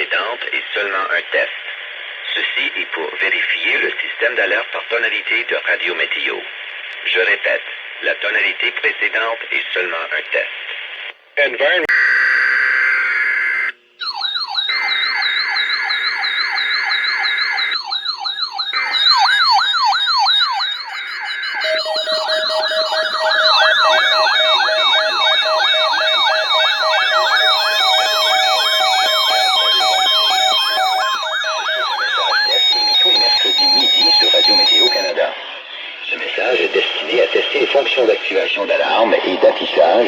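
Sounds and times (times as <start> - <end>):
electronic siren yelping: 11.9 - 40.0
steady lower tone: 17.8 - 39.8
higher wavering tone: 17.9 - 35.1.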